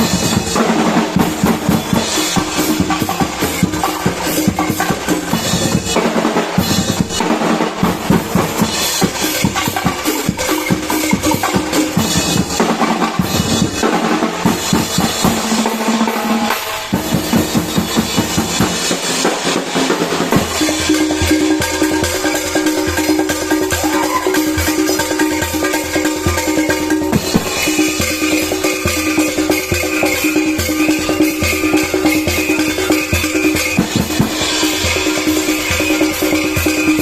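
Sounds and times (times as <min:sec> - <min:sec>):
bass and snare drums playing: 0:00.0 - 0:37.0
pitched music: 0:20.3 - 0:37.0.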